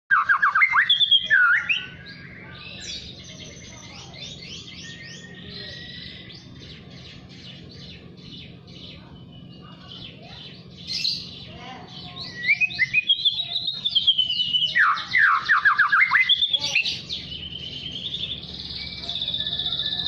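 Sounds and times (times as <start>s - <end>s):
bird song whistles: 0.1s - 6.6s, 12.0s - 20.0s
bird repeated rising notes: 0.1s - 20.0s.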